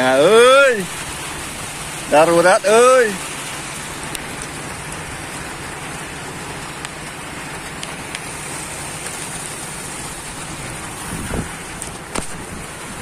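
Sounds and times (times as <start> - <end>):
rain falling: 0.0 - 13.0
light ticks: 4.0 - 5.1, 6.6 - 8.3, 11.7 - 12.4.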